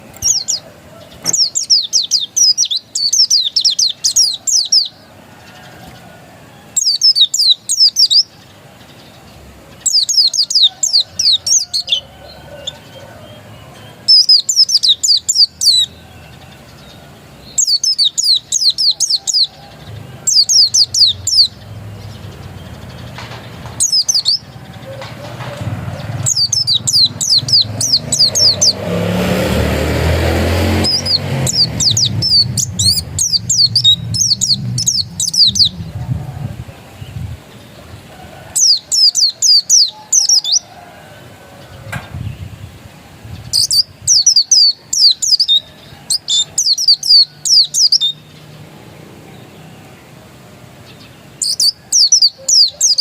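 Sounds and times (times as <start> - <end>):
bird chirping rapidly: 0.0 - 5.0, 6.7 - 37.7, 38.6 - 40.7, 42.1 - 48.7, 50.8 - 53.0
low rumble: 21.2 - 38.0.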